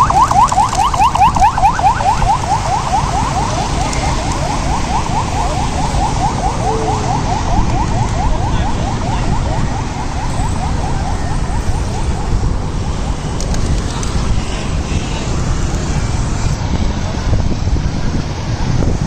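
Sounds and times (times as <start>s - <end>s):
electronic alarm whooping: 0.0s - 12.3s
low traffic rumble: 0.0s - 19.0s.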